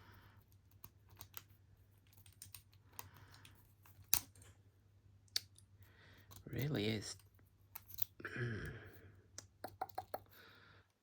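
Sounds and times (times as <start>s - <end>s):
lock pick clicking and scraping: 7.7s - 8.2s.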